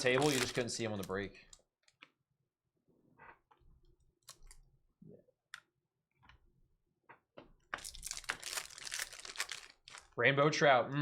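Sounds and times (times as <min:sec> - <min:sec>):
card packs rustling: 0:00.0 - 0:01.3, 0:07.8 - 0:10.2.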